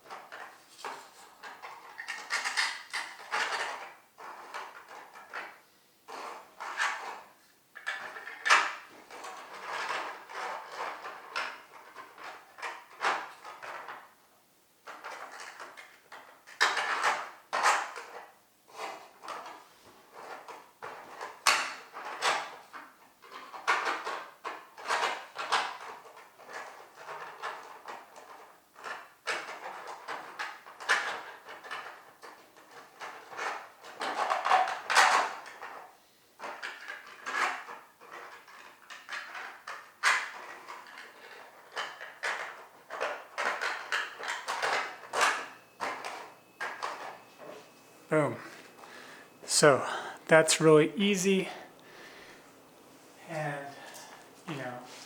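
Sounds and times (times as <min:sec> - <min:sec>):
plastic tiles clattering and clicking: 0:00.0 - 0:14.2, 0:14.8 - 0:47.3.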